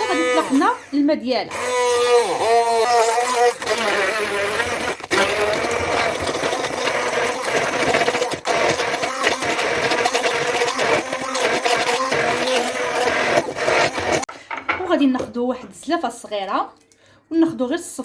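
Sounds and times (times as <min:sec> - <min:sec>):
electric food chopper grinding onion: 0:00.0 - 0:14.3.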